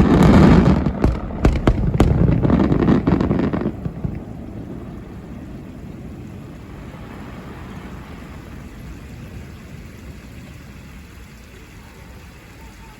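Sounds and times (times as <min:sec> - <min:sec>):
fireworks rumble echoing: 0:00.0 - 0:12.9.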